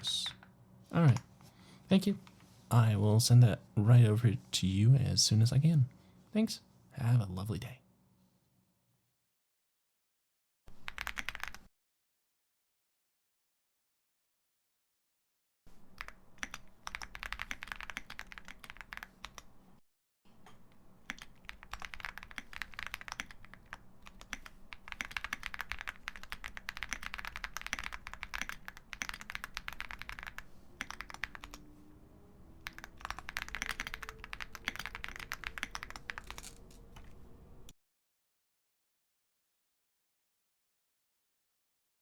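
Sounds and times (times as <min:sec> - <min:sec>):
clicky mechanical keyboard typing: 0:10.8 - 0:11.7, 0:15.9 - 0:19.6, 0:20.6 - 0:31.8, 0:32.6 - 0:37.2.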